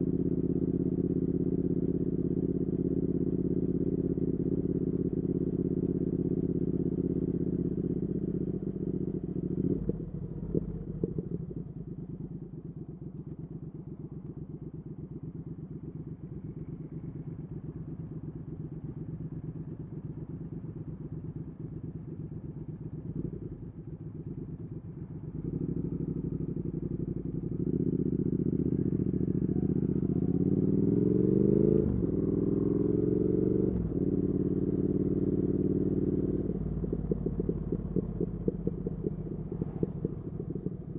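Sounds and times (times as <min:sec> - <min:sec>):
motorcycle engine revving: 0:27.6 - 0:40.9.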